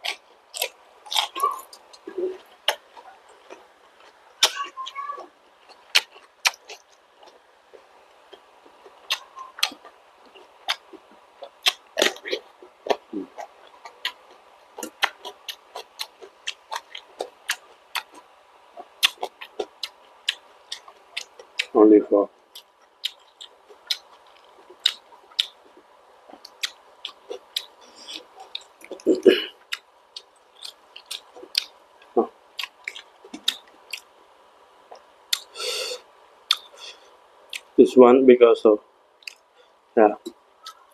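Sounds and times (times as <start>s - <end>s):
person chewing: 0.0s - 4.7s, 5.6s - 7.4s, 8.2s - 21.7s, 22.5s - 34.1s, 34.9s - 37.7s, 39.2s - 39.5s
lip smacks: 5.9s - 6.9s, 36.5s - 37.7s.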